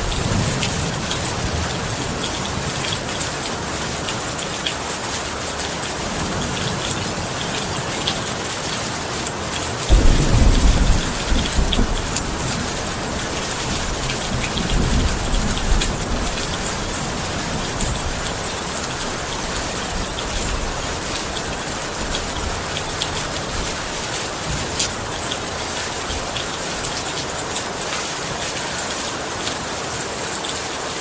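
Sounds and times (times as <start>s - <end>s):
heavy rain falling: 0.0s - 31.0s
thunder rumbling: 9.9s - 26.3s.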